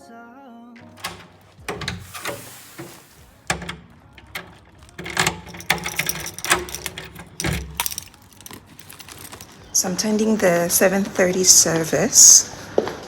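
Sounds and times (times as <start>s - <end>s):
objects being handled clattering: 0.8s - 10.4s.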